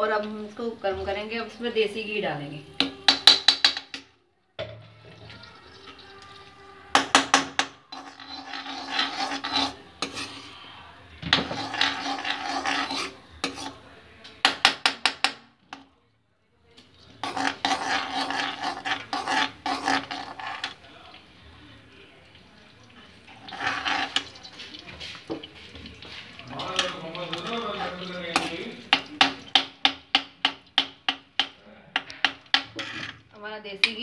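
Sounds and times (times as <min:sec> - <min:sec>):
metal spoon scraping: 0:02.8 - 0:04.0, 0:05.3 - 0:15.8, 0:17.0 - 0:21.2, 0:23.2 - 0:34.0
metal spoon tapping: 0:02.8 - 0:04.1, 0:26.6 - 0:32.8.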